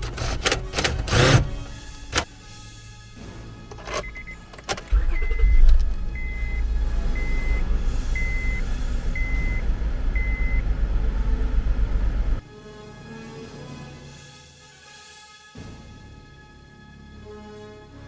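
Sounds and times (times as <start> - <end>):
car engine rumbling: 0.0 - 12.4
dashboard warning chime beeping: 3.8 - 12.4.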